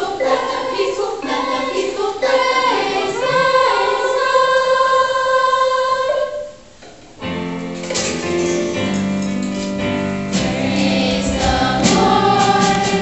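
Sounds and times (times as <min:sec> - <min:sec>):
choir singing: 0:00.0 - 0:06.5, 0:10.4 - 0:13.0
instrumental accompaniment chords: 0:07.2 - 0:13.0.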